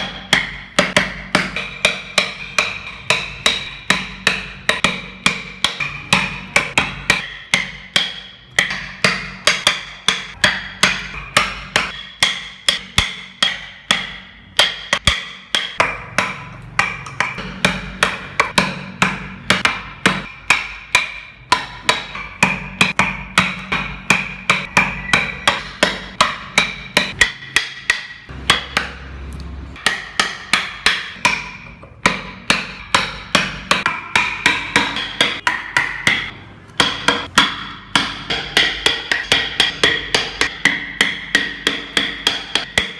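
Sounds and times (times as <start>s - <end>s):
hammer striking with metallic ring: 0.0s - 29.1s.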